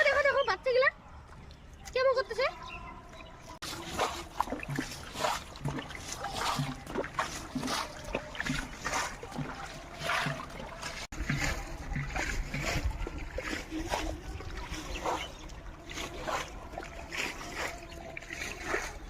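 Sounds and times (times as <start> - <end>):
water splashing in river: 1.2 - 19.0.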